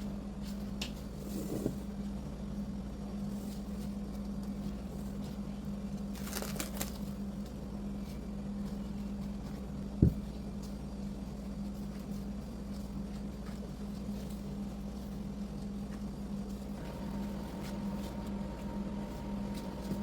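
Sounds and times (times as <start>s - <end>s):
crackly rustle: 1.9s - 16.9s
low hum: 16.7s - 20.0s.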